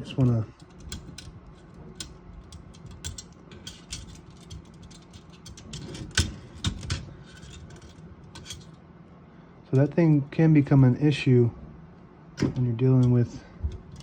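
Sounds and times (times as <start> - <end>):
typewriter parts clicking and rattling: 0.1 - 8.7, 13.0 - 14.0.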